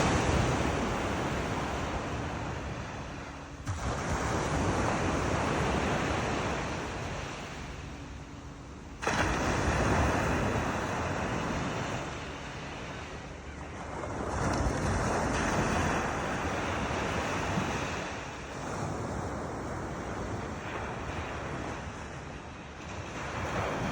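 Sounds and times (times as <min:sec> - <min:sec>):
wind on microphone: 0:00.0 - 0:07.2
sea waves breaking on shore: 0:00.0 - 0:23.9.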